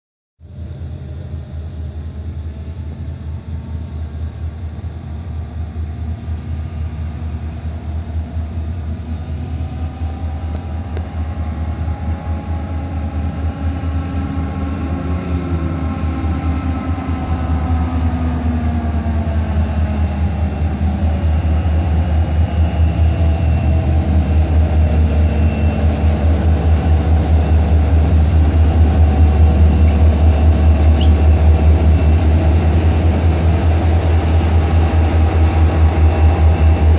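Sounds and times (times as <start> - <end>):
diesel locomotive engines throttling: 0.5 - 36.9
whining tones bending in pitch: 8.9 - 36.9.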